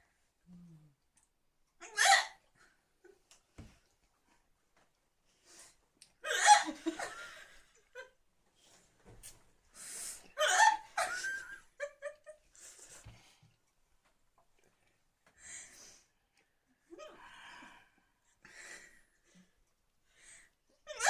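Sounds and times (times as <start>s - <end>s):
woman laughing: 10.4s - 12.4s.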